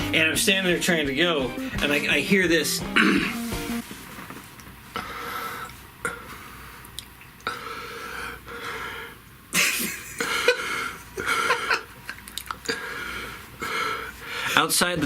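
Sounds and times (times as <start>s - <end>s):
man imitating wheezing breaths: 2.9s - 3.4s, 12.6s - 14.6s.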